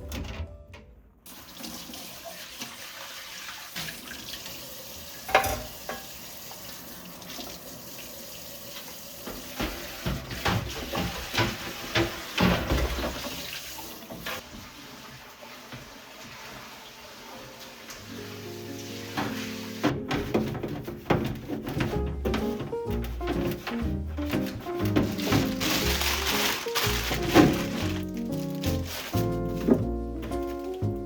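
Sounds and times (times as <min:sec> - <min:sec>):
clattering knocks in sink: 0:05.3 - 0:06.0, 0:09.3 - 0:13.4, 0:19.2 - 0:28.0
tap running into a sink: 0:05.3 - 0:06.2.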